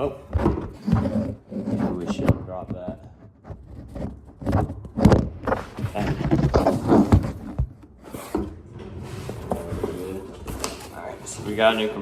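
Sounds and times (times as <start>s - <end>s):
rustling cardboard and packing: 0.0s - 12.0s
knocks and bumps: 0.2s - 10.0s.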